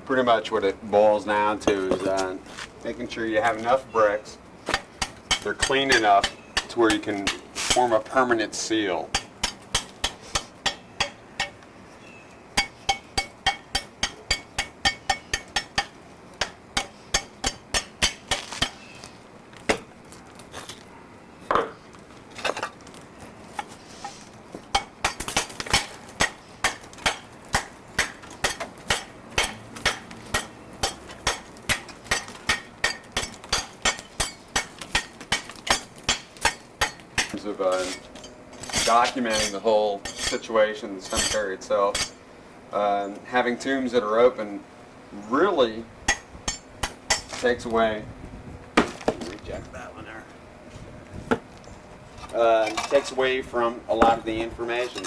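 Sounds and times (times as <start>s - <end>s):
metal tool chipping brick: 4.7s - 8.0s, 9.1s - 11.5s, 12.6s - 18.8s, 24.7s - 38.0s.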